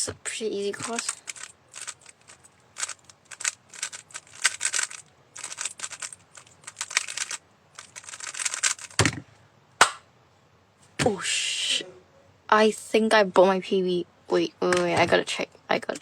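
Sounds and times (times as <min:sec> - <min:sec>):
plastic puzzle cube clicking: 0:00.8 - 0:09.2.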